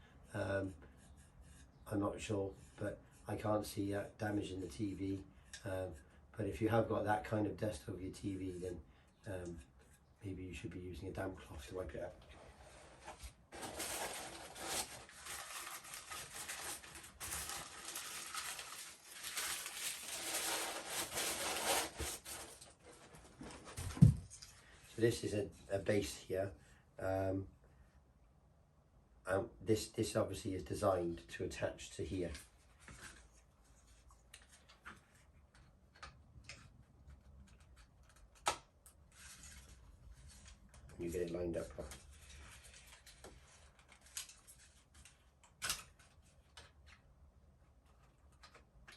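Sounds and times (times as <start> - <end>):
packaging crinkling: 13.5 - 23.8.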